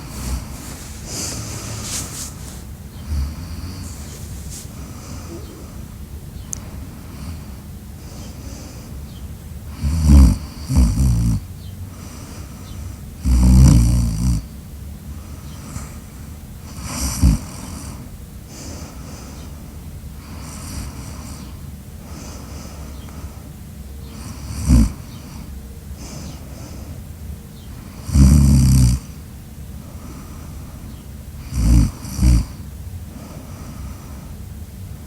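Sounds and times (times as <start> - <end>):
person snoring loudly: 0.0 - 2.3, 3.0 - 4.1, 9.7 - 11.4, 13.2 - 14.4, 16.8 - 17.7, 24.2 - 25.0, 28.0 - 29.1, 31.4 - 32.6
soft breathing: 0.0 - 9.8, 11.8 - 13.2, 17.4 - 28.1, 29.0 - 35.0.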